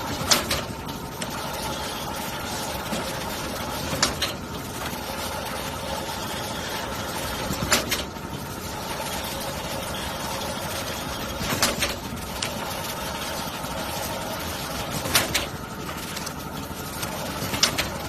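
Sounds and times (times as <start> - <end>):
sharp machine clatter: 0.0 - 18.0.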